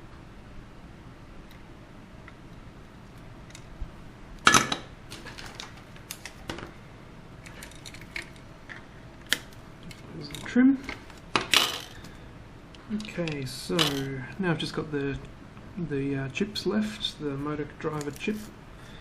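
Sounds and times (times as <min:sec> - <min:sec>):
metal tools clicking and clinking: 0:13.0 - 0:14.2.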